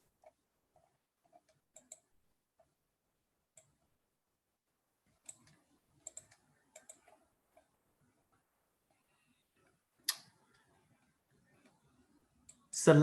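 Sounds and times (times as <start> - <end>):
mouse and keyboard clicks: 1.3 - 2.1, 5.2 - 7.2.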